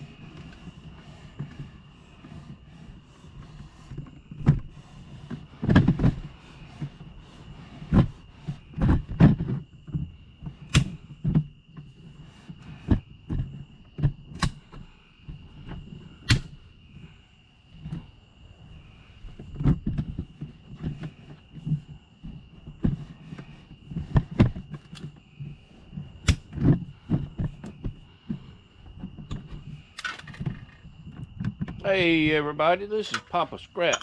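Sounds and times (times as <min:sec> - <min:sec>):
high insect trill: 0:00.0 - 0:05.6, 0:08.2 - 0:34.0
knocks and clunks: 0:19.2 - 0:34.0.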